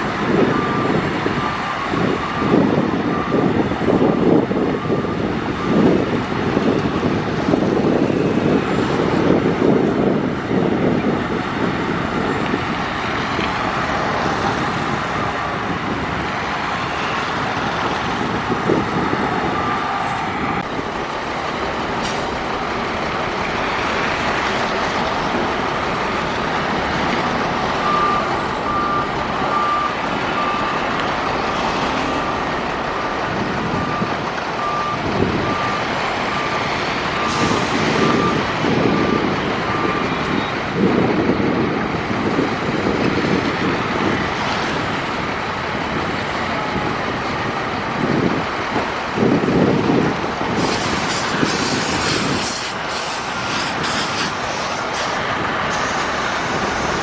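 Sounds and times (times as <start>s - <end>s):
reversing alarm beeping: 0.0s - 6.8s, 13.4s - 20.7s, 26.4s - 40.6s
diesel machinery running: 0.0s - 57.0s
air hiss: 50.6s - 57.0s.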